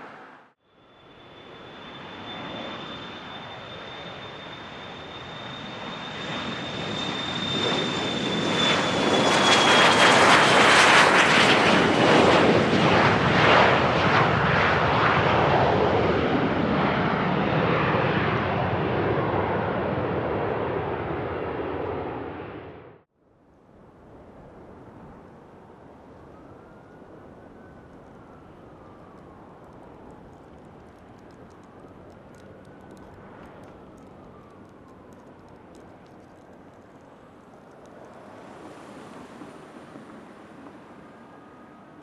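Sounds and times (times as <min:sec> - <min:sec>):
jet engines whining: 0:01.0 - 0:22.9.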